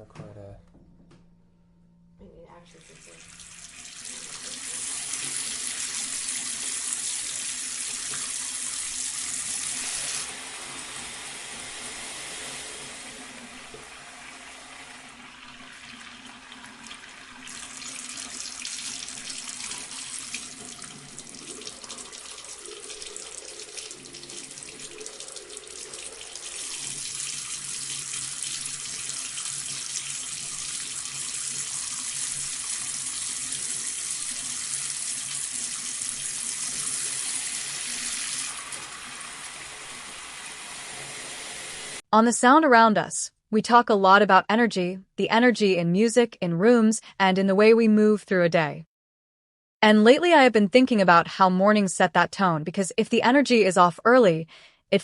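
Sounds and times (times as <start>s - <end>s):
water pouring into sink basin: 2.8s - 42.0s.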